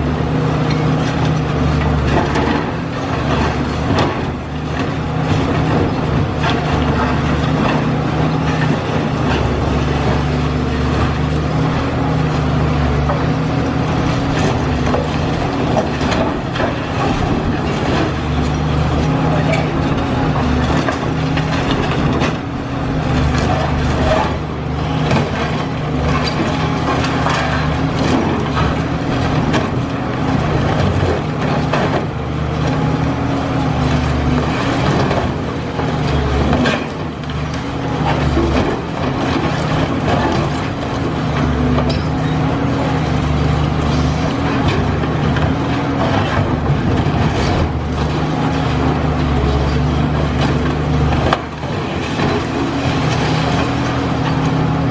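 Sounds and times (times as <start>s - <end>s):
diesel engine running under load: 0.0s - 54.9s
concrete and debris crunching: 13.9s - 54.9s.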